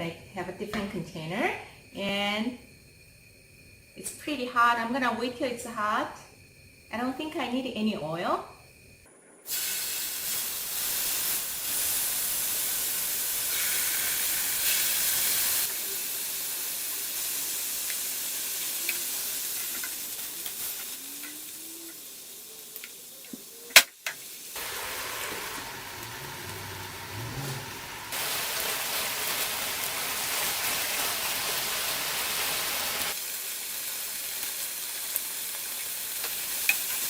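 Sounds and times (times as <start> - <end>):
meat sizzling in a skillet: 9.5 - 37.0.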